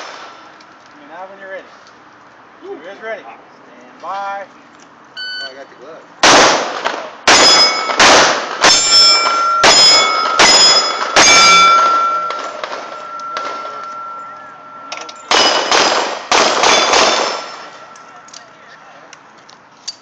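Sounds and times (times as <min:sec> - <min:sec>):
pistol shots: 0:06.2 - 0:14.2, 0:14.9 - 0:18.0
steel targets ringing: 0:07.3 - 0:18.4.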